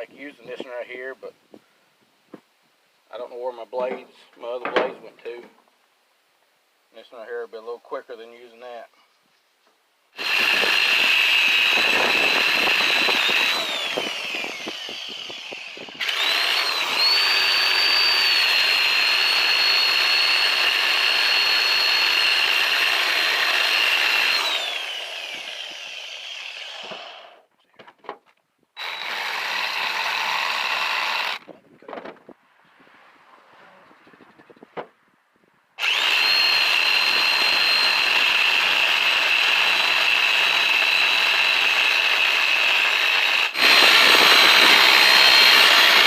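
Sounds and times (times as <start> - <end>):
angle grinder cutting steel: 10.2 - 27.4, 28.8 - 31.5, 35.8 - 46.0.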